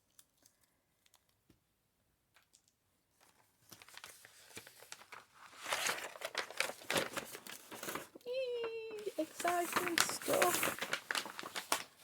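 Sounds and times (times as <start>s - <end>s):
paper packaging crinkling and tearing: 3.2s - 12.0s.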